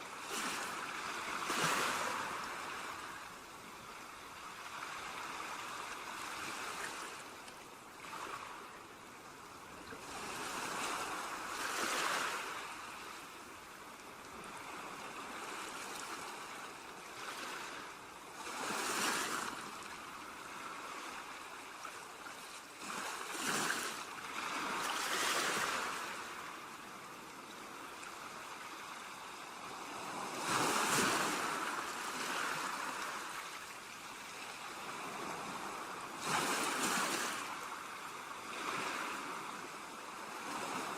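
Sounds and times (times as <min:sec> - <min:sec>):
waves breaking on shore: 0:00.1 - 0:40.9.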